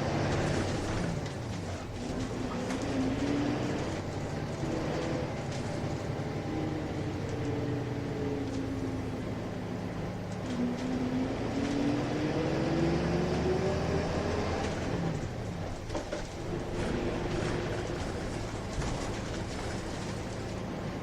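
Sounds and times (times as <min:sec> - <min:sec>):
diesel bus engine drone: 0:00.0 - 0:21.0.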